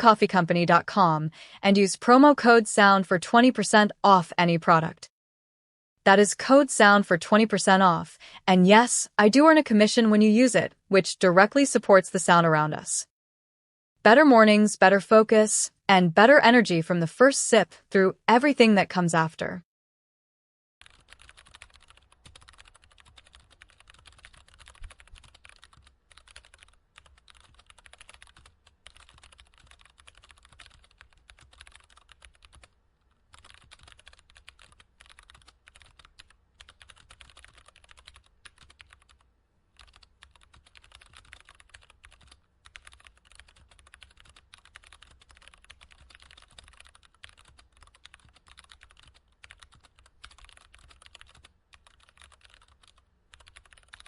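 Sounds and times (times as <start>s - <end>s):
typing on computer keyboard: 20.8s - 54.0s.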